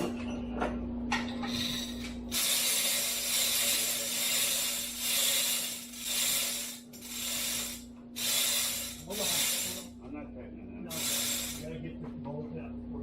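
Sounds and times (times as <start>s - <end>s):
ratchet wrench clicking: 1.5s - 9.9s, 10.9s - 11.6s.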